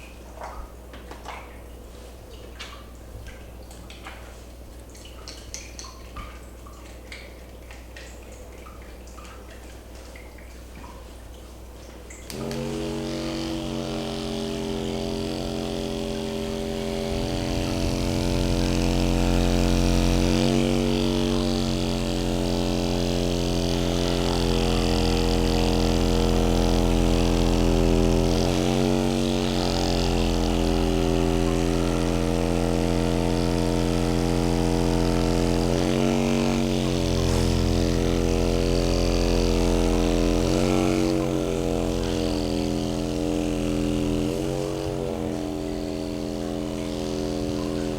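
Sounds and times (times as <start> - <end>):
electric motor humming: 12.3 - 47.9.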